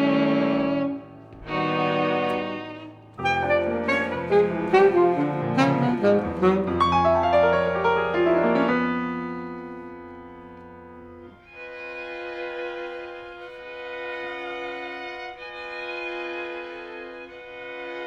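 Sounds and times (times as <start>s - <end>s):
bowed strings: 0.0s - 7.2s
jazz ensemble playing: 0.0s - 11.3s.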